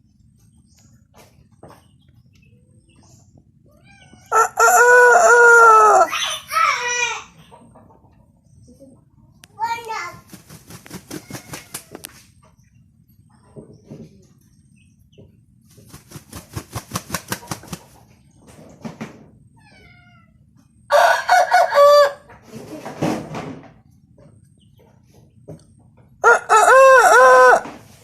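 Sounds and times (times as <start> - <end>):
rooster crowing: 4.3 - 6.1, 20.9 - 22.3, 26.2 - 27.8.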